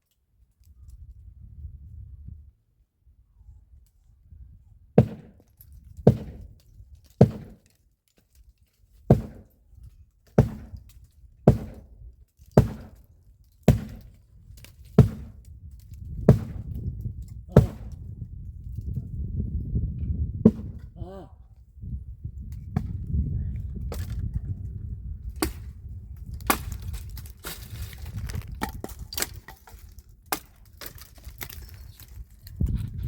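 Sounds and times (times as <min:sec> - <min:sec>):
axe chopping wood: 0:05.0 - 0:06.5, 0:07.2 - 0:07.7, 0:09.1 - 0:09.6, 0:10.4 - 0:11.9, 0:12.6 - 0:13.0, 0:13.6 - 0:14.2, 0:15.0 - 0:15.5, 0:16.3 - 0:16.8, 0:17.5 - 0:18.0, 0:20.4 - 0:20.8, 0:25.4 - 0:25.7, 0:26.4 - 0:31.6.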